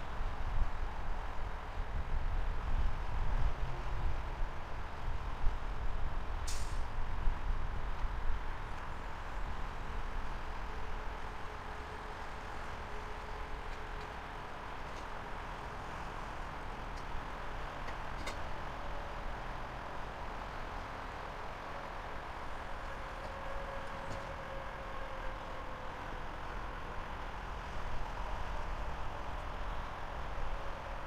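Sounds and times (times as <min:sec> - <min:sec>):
train rumble: 0:00.1 - 0:31.0
short hiss of air: 0:06.5 - 0:06.9.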